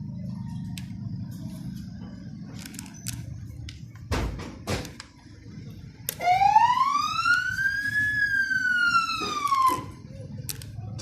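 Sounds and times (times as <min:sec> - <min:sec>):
police siren wail: 0:06.2 - 0:10.0.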